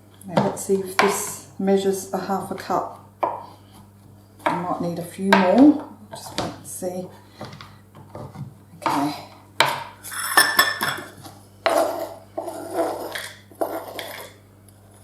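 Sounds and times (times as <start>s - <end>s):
kitchen utensils clinking and scraping: 10.0s - 14.4s.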